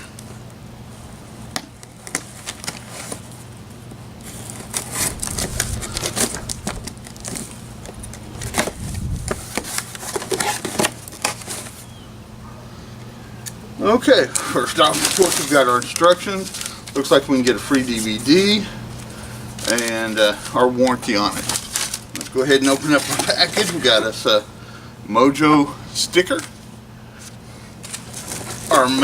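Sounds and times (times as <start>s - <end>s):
cardboard packaging crinkling and tearing: 1.7s - 3.5s, 4.2s - 11.9s, 14.1s - 24.4s, 27.2s - 29.0s.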